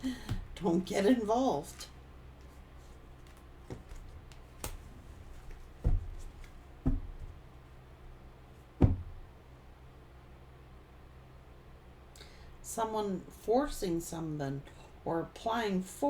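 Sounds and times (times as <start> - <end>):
soft knocks on tabletop: 8.8 - 9.2.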